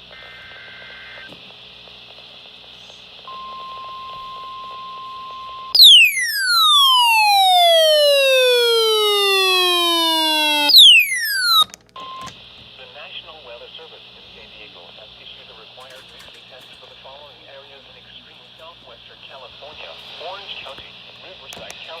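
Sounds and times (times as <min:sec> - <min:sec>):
radio hiss: 0:00.0 - 0:04.5, 0:12.3 - 0:22.0.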